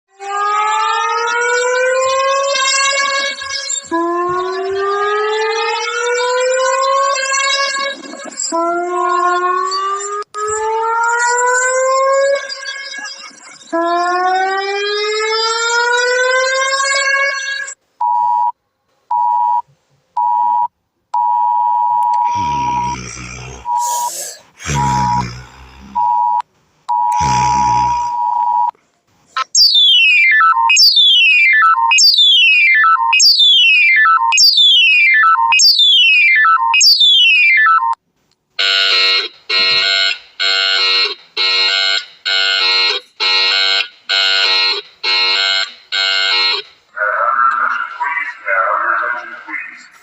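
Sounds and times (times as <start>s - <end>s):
short buzzy pulses: 22.3s - 26.0s.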